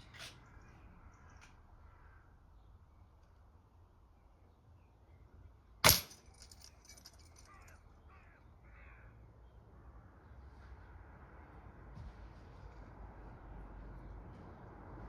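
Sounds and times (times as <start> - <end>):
air rifle shot: 5.8 - 6.3.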